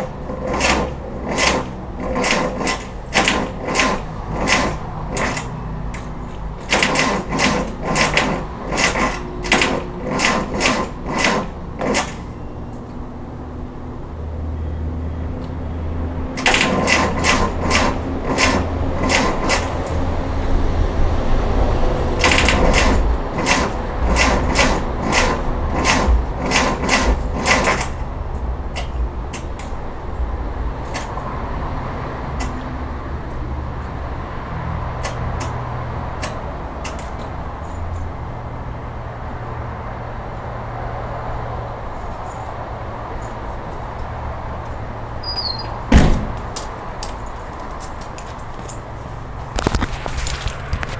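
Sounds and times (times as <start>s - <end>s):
car starter clicking: 0.3s - 12.3s, 16.4s - 20.0s, 22.2s - 28.0s.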